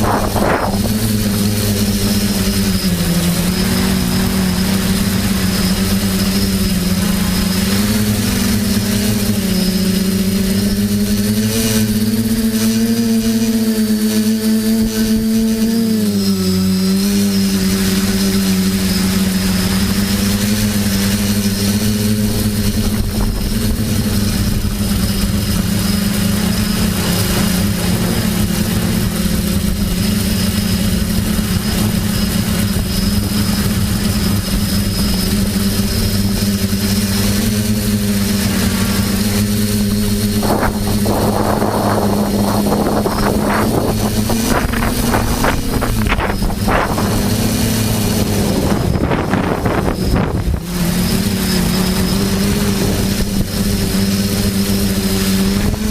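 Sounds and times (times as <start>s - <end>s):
gusty rushing noise: 0.0s - 7.8s, 36.4s - 51.8s
drone propellers droning: 0.0s - 55.9s.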